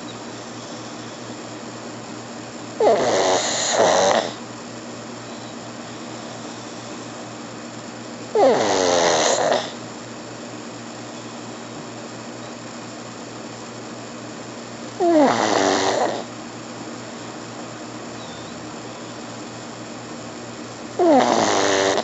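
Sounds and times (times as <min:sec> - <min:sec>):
dog snoring: 0:00.0 - 0:01.5, 0:02.8 - 0:04.4, 0:05.3 - 0:07.2, 0:08.3 - 0:09.8, 0:15.0 - 0:16.3, 0:18.2 - 0:19.2, 0:21.0 - 0:22.0
steady low hum: 0:00.0 - 0:22.0.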